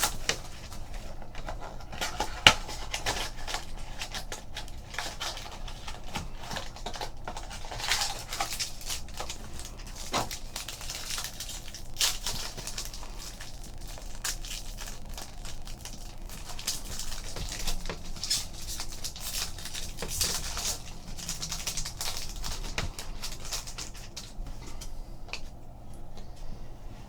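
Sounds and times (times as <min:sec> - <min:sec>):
wrappers rustling and crinkling: 0:00.0 - 0:27.0.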